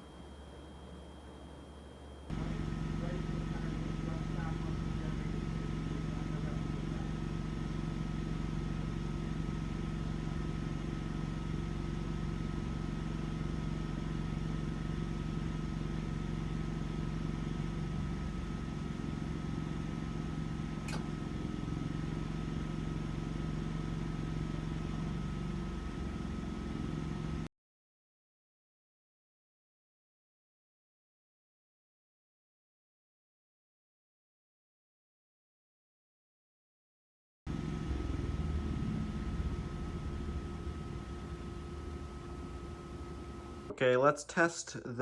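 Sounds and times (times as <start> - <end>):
generator engine humming: 0.0 - 27.5, 37.5 - 43.8
sharp click: 20.8 - 21.1.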